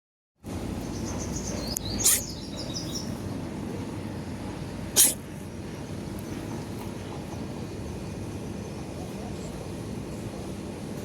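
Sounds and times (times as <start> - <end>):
cat coughing: 2.0 - 2.2, 5.0 - 5.2.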